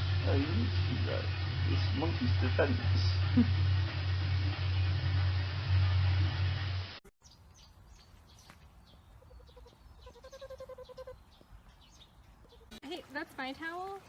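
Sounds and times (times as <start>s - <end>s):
loud low hum: 0.0s - 7.0s
faint bird chirping: 7.2s - 12.8s.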